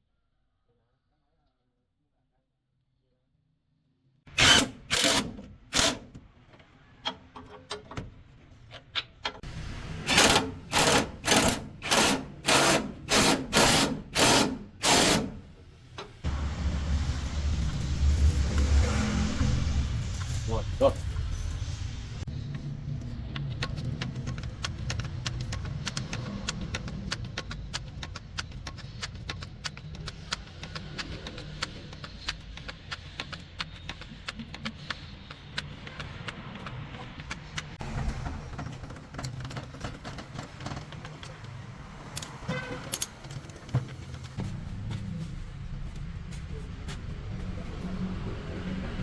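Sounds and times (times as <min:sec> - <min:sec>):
low steady rumble: 0:16.2 - 0:24.6
metal tools clinking: 0:40.8 - 0:44.4.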